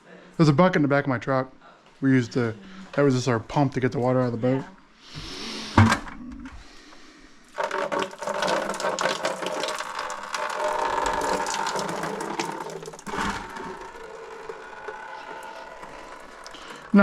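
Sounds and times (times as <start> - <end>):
small motor mechanism clattering: 10.6 - 17.0.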